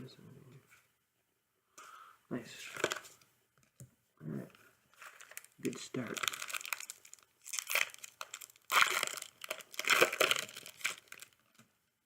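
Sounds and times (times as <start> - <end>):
foil wrapper crinkling and tearing: 4.9 - 11.6.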